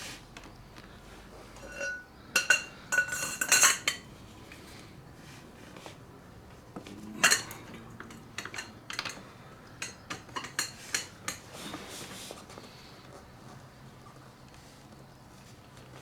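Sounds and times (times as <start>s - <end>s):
metal hand tools clinking: 1.6s - 4.0s, 7.2s - 11.4s.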